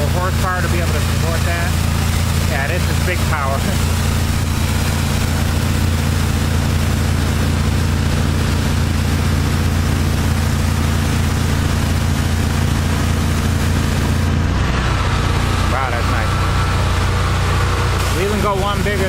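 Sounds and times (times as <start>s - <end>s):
pressure washer hiss: 0.0s - 14.3s, 15.4s - 19.0s
pressure washer engine drone: 0.0s - 19.0s.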